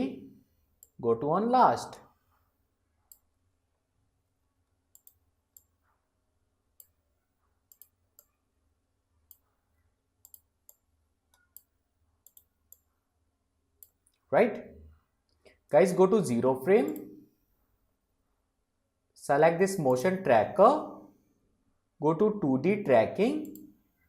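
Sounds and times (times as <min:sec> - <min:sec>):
computer mouse clicking: 0:04.9 - 0:06.0, 0:06.8 - 0:07.0, 0:07.6 - 0:08.4, 0:10.2 - 0:12.9, 0:16.8 - 0:17.2.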